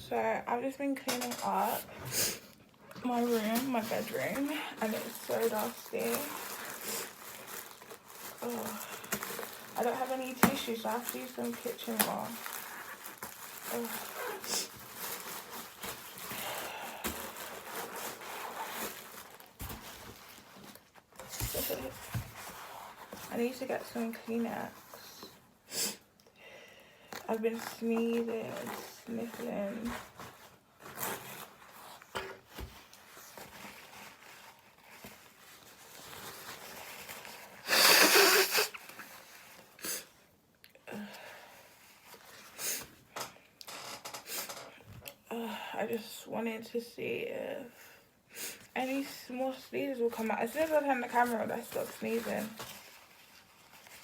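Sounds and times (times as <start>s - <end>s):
person sniffing: 2.0s - 2.5s, 25.7s - 26.0s, 37.6s - 38.8s, 39.8s - 40.2s
paper towel rustling: 3.1s - 25.0s, 27.3s - 39.7s, 49.0s - 54.0s
person sneezing: 37.6s - 38.8s.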